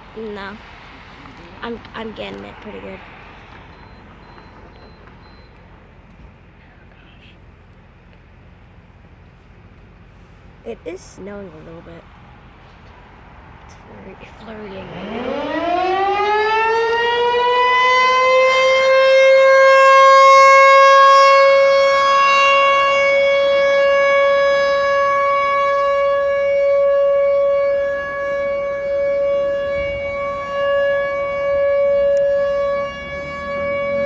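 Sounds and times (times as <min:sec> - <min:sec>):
outdoor warning siren wailing: 0:00.0 - 0:05.8, 0:14.1 - 0:34.0.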